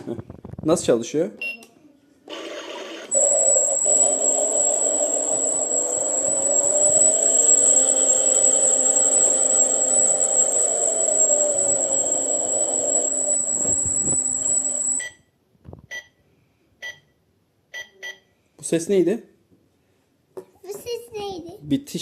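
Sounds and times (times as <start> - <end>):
small electric motor whirring: 3.0 - 15.0.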